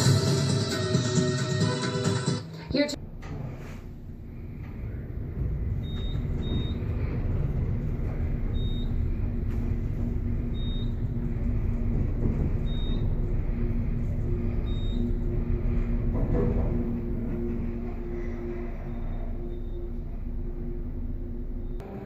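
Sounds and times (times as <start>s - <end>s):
vehicle engine rumbling: 2.9s - 22.0s.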